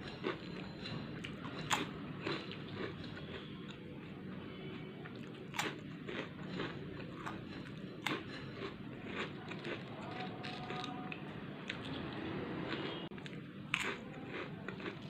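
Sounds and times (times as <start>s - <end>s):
chips crunching: 0.0s - 3.5s, 5.1s - 12.0s, 12.7s - 15.0s.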